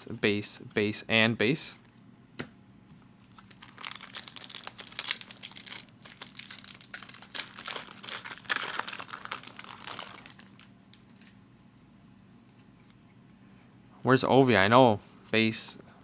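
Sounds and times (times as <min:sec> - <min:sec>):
wrapper crinkling: 0:03.2 - 0:11.3.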